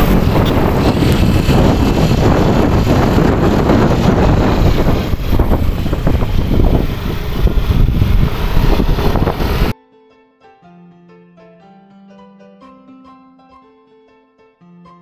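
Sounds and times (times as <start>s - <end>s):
vehicle road and engine noise: 0.0s - 9.7s
wind rushing over microphone: 0.0s - 9.8s.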